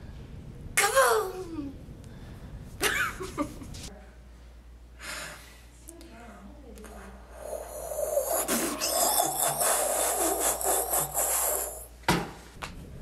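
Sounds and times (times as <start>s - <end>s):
mouth hiss: 7.3s - 11.9s.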